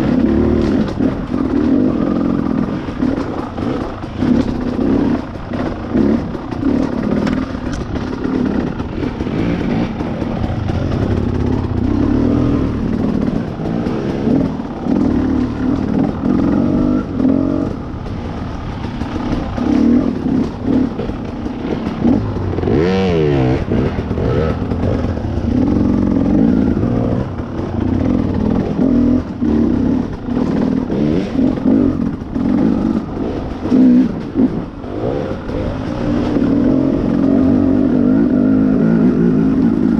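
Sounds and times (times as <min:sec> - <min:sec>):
dirt bike engine revving: 0:00.0 - 0:39.9.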